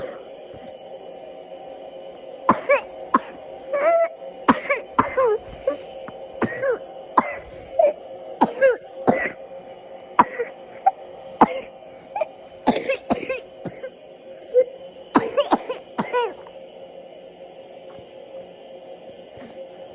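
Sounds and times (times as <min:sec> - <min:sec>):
person coughing: 0:00.0 - 0:00.2, 0:02.5 - 0:09.4, 0:10.2 - 0:13.9, 0:14.5 - 0:16.5.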